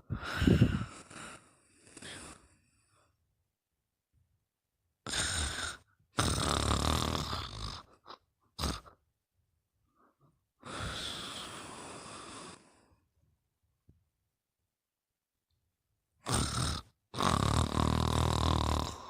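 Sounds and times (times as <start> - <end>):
short breath: 0.0 - 3.1
breathy exhale: 0.1 - 3.1, 10.6 - 12.9
rattling snore: 5.1 - 7.9, 16.2 - 19.0.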